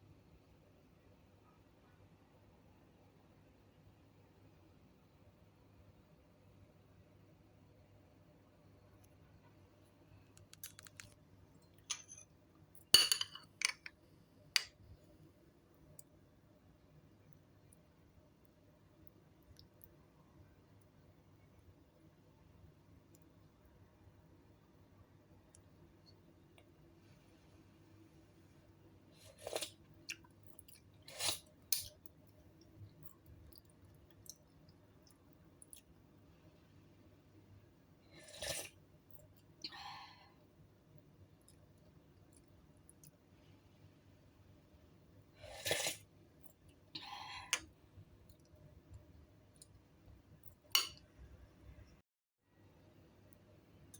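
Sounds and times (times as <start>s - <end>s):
metal spoon clinking on bowl: 13.0s - 13.9s
person slurping soup: 29.2s - 29.7s, 31.0s - 31.5s, 38.1s - 38.8s, 45.4s - 46.1s.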